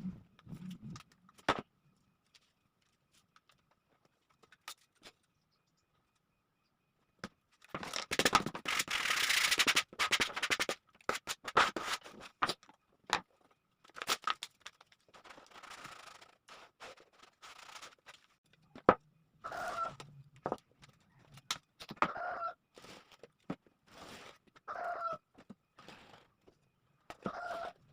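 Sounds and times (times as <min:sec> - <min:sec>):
scraping and cutting sheet material: 0:08.2 - 0:12.4.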